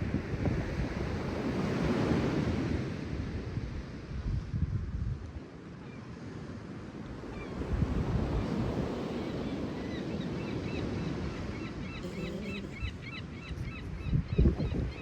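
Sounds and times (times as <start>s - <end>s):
ocean surf washing on shore: 6.6s - 13.4s
wind buffeting microphone: 12.6s - 15.0s.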